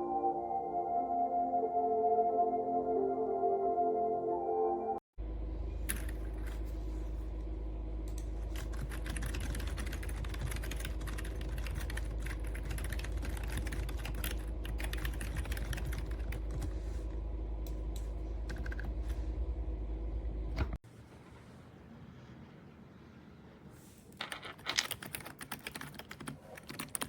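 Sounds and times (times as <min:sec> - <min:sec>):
steady low hum: 0:05.2 - 0:24.2.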